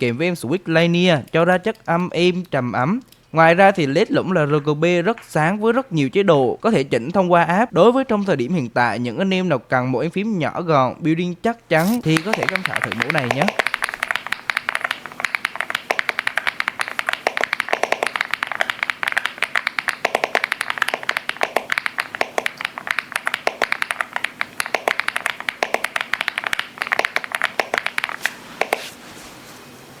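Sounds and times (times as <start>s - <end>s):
mechanical keyboard typing: 11.8s - 28.9s.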